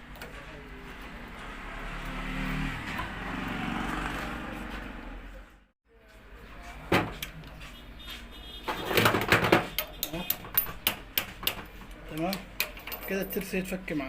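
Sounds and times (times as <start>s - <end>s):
hand tools clicking and tapping: 7.0s - 7.6s, 8.8s - 13.6s.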